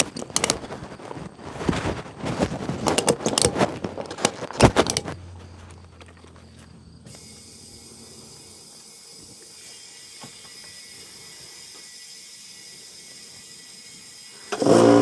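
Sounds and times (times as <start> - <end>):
air hissing into a tire: 7.1 - 14.6.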